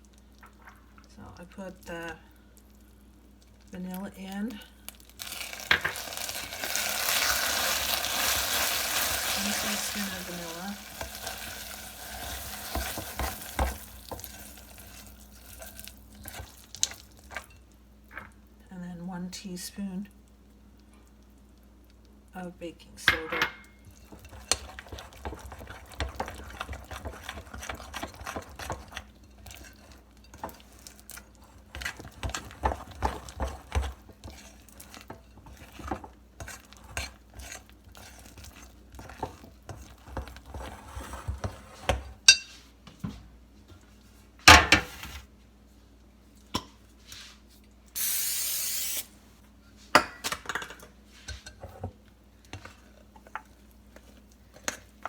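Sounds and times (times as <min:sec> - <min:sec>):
spoon stirring and scraping bowl: 0:05.8 - 0:17.6, 0:23.1 - 0:42.7, 0:46.4 - 0:47.6, 0:49.8 - 0:55.0
steady hiss: 0:48.0 - 0:49.2.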